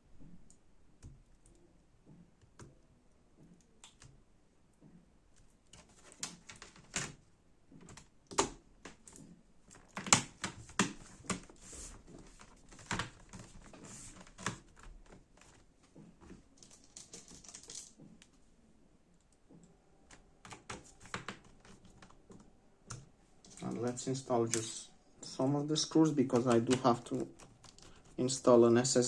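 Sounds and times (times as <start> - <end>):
laptop parts clicking and tapping: 4.8 - 18.4, 19.3 - 25.4, 26.2 - 28.2.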